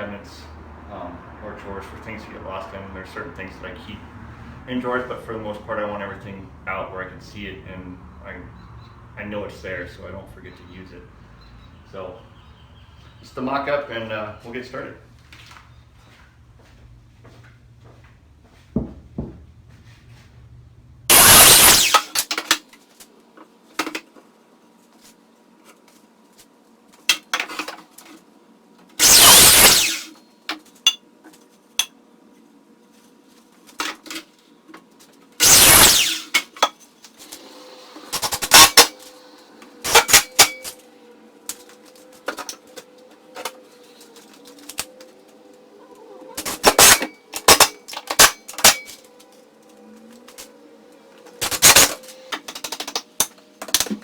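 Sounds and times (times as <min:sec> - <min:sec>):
loud harsh power tool bursts: 0:21.1 - 0:22.3, 0:29.0 - 0:30.2, 0:35.4 - 0:36.6, 0:37.3 - 0:39.2, 0:39.8 - 0:40.8, 0:46.4 - 0:48.9, 0:51.4 - 0:52.1.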